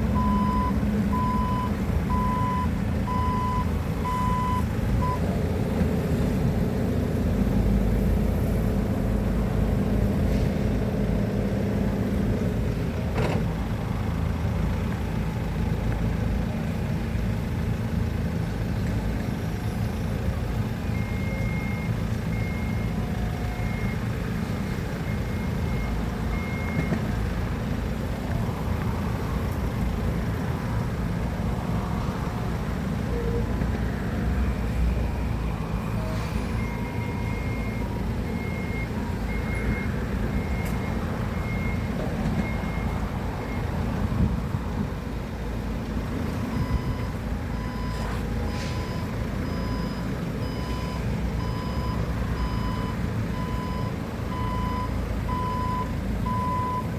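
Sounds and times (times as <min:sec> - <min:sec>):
heavy equipment engine running: 0:00.0 - 0:56.9
reversing alarm beeps: 0:00.2 - 0:05.2, 0:20.9 - 0:24.0, 0:35.3 - 0:43.7, 0:46.5 - 0:56.9.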